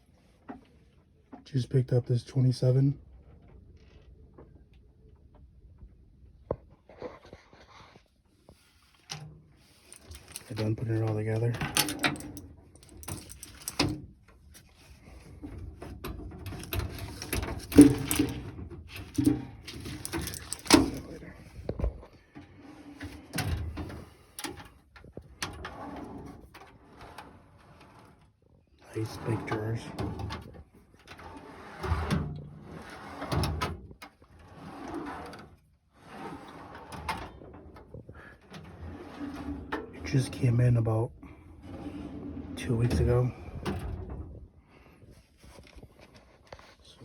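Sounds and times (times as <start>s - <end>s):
steel drawers knocking and clattering: 9.9s - 14.0s, 15.5s - 21.3s.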